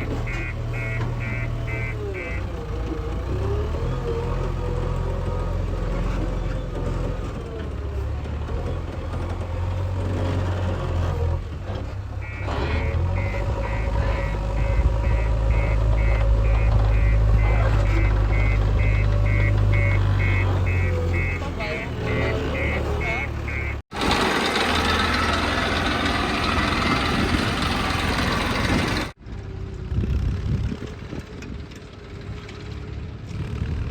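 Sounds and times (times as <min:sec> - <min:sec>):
reversing alarm beeping: 0:00.0 - 0:02.5, 0:12.2 - 0:23.8
heavy diesel engines running: 0:00.0 - 0:33.9.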